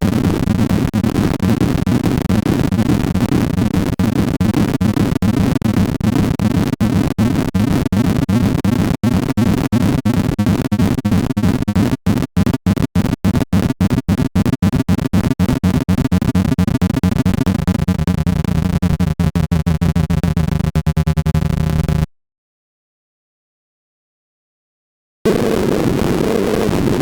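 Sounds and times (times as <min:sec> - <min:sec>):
square-wave sub-oscillator: 0:00.0 - 0:22.1, 0:25.3 - 0:27.0
short synthesized pulses: 0:10.5 - 0:22.1.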